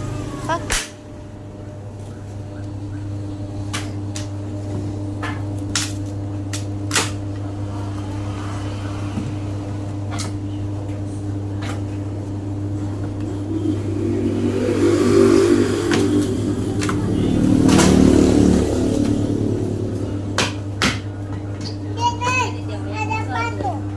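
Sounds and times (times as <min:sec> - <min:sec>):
low mechanical hum: 0:00.0 - 0:23.9
low rumble: 0:12.5 - 0:20.4.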